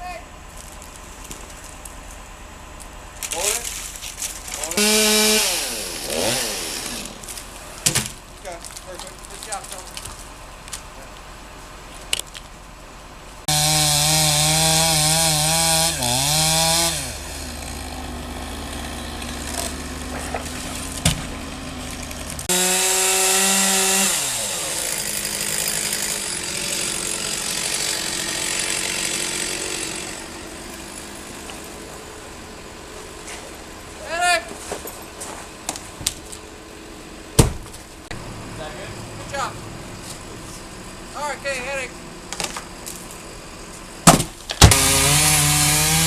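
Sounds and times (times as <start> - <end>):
chainsaw cutting wood: 4.2 - 8.0, 13.5 - 31.8, 44.1 - 46.0.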